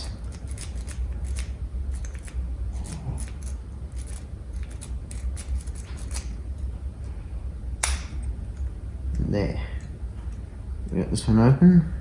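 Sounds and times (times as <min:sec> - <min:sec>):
metallic clicks and scrapes of lock picking: 0:00.0 - 0:06.7
steady low hum: 0:00.0 - 0:12.0.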